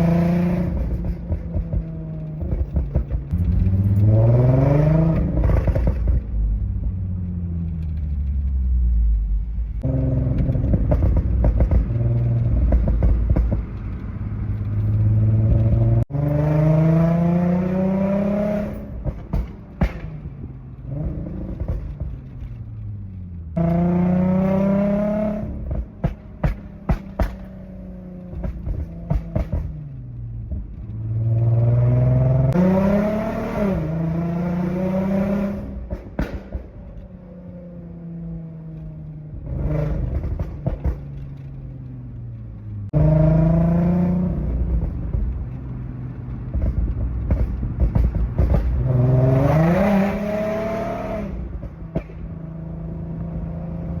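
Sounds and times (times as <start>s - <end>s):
car engine revving: 0.0s - 54.0s
exhaust pops and bangs: 0.4s - 4.0s, 5.0s - 6.5s, 9.8s - 16.2s, 18.2s - 22.7s, 25.3s - 31.1s, 35.2s - 37.2s, 39.3s - 41.7s, 44.3s - 45.7s, 46.3s - 50.2s, 51.0s - 52.5s.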